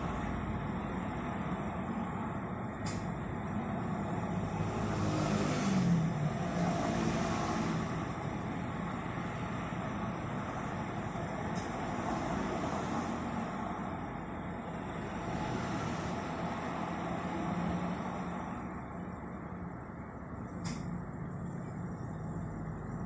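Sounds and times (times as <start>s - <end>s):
sharp click: 2.8s - 3.1s, 20.6s - 21.0s.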